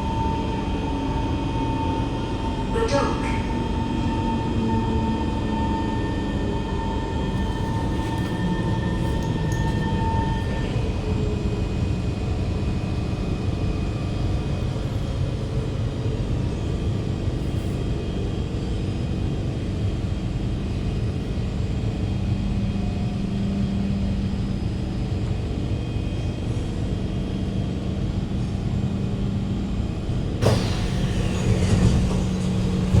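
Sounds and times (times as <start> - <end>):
train wheels rumbling on track: 6.0 - 33.0
low motor hum: 6.5 - 11.8, 30.4 - 33.0.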